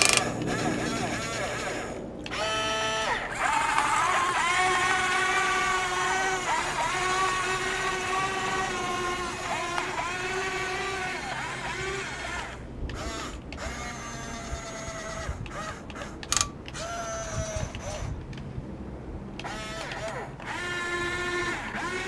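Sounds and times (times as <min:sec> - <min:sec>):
clicks and scraping: 0:00.0 - 0:14.0
electric motors whining: 0:00.0 - 0:18.5, 0:19.3 - 0:22.0.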